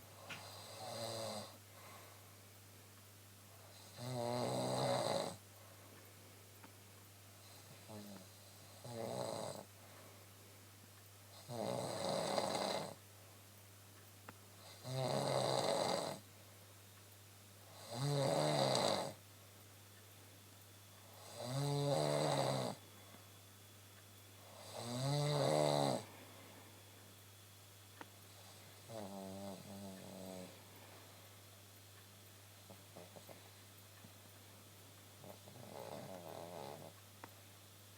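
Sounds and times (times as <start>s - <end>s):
low steady hum: 0.0s - 12.1s, 12.9s - 18.4s, 19.1s - 37.9s
woman snoring: 0.3s - 1.6s, 3.8s - 5.4s, 7.5s - 9.7s, 11.4s - 13.0s, 14.6s - 16.2s, 17.7s - 19.2s, 21.2s - 22.8s, 24.4s - 26.1s, 28.8s - 30.6s, 35.2s - 37.0s.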